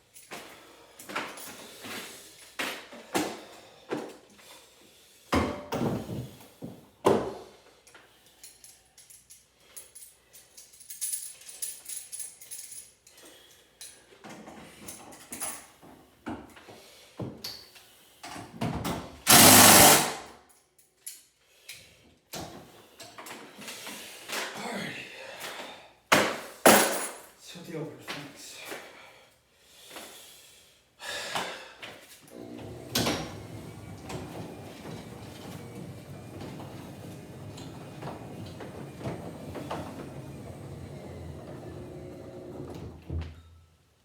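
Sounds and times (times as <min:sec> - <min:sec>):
loud burst of noise: 0:19.3 - 0:20.2.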